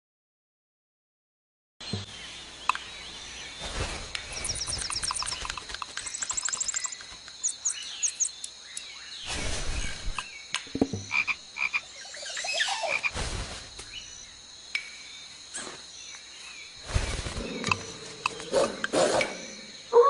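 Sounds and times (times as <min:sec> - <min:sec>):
birds chirping in trills: 0:01.8 - 0:13.1, 0:13.9 - 0:20.0
scattered clicks: 0:04.4 - 0:08.9.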